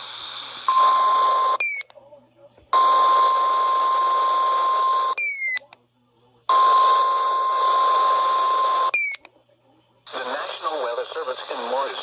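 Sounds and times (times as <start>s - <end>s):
radio hiss: 0.0s - 1.6s, 10.1s - 12.0s.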